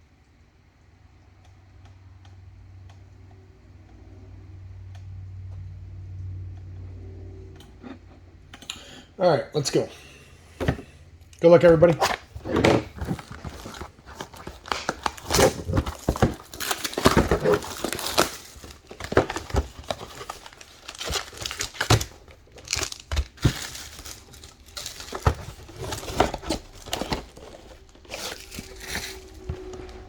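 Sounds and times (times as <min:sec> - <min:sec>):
card wrappers torn and crinkled: 0:11.4 - 0:30.0.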